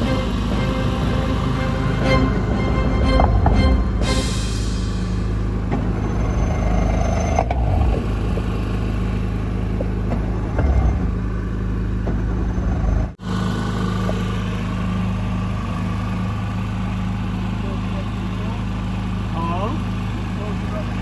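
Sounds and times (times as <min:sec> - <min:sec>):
boat motor running: 0:00.0 - 0:04.2.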